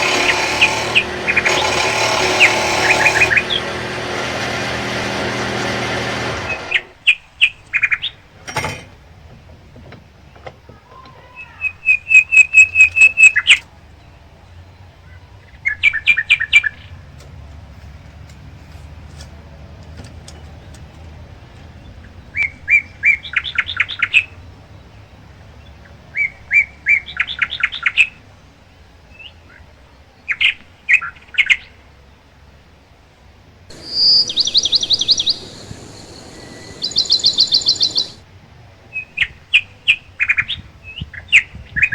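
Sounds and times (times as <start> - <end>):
songbird chirping: 33.7 - 38.2.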